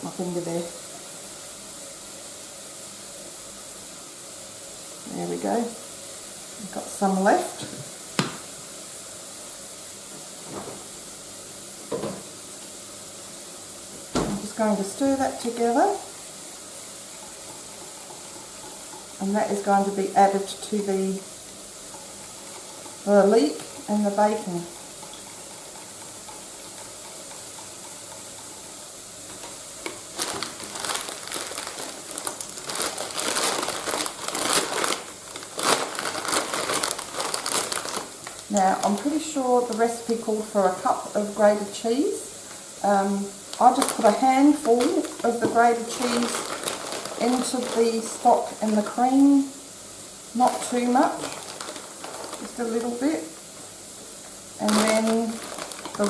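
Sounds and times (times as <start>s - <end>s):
food sizzling in a pan: 0.0s - 56.0s
plastic packet crinkling: 29.4s - 40.0s, 43.5s - 49.1s, 50.4s - 53.5s, 54.6s - 56.0s.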